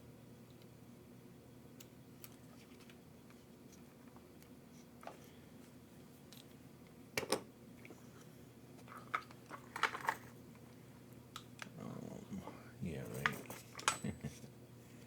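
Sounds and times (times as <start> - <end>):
clicks and knocks of small parts: 8.8 - 10.2.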